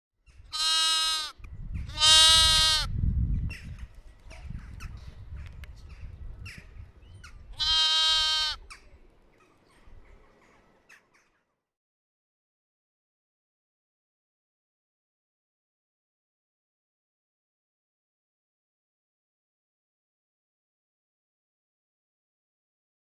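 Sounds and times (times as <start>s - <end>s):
lamb bleating: 0.5s - 2.9s, 7.6s - 8.6s.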